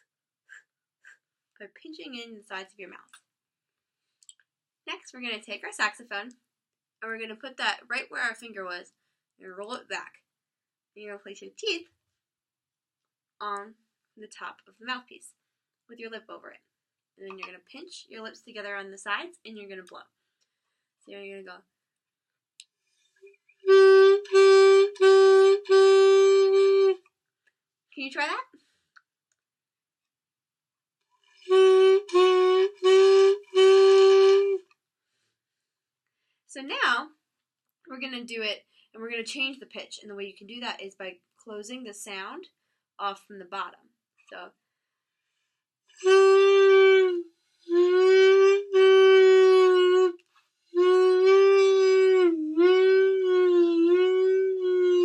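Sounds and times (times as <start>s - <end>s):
saxophone mouthpiece held notes: 23.6s - 27.0s, 31.4s - 34.6s, 46.0s - 50.2s, 50.8s - 55.0s.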